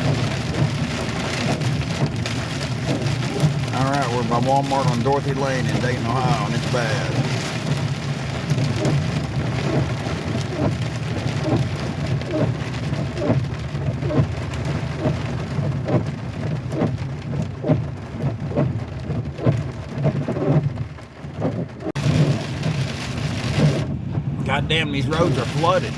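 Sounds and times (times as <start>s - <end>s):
heavy rain on vehicle roof: 0.0s - 25.9s.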